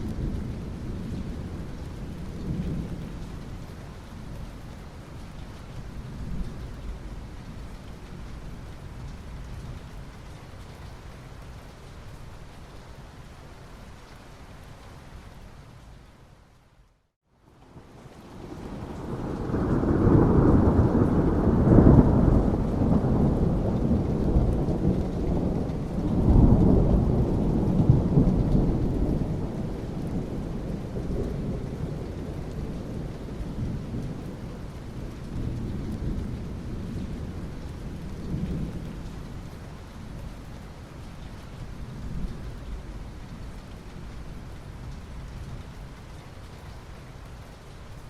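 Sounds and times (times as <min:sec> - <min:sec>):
steady rain: 0:00.0 - 0:48.0
thunder rumbling: 0:18.3 - 0:39.5.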